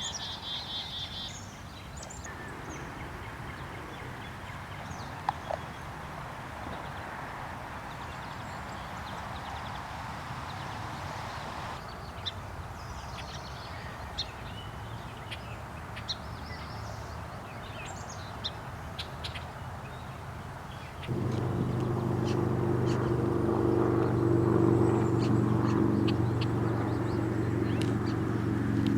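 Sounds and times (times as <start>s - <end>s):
bird chirping: 21.0s - 28.9s
steady background hum: 21.1s - 28.9s.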